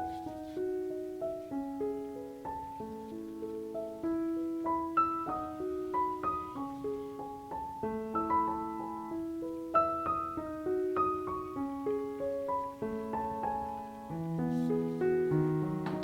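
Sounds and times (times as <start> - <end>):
gentle piano melody: 0.0 - 16.0.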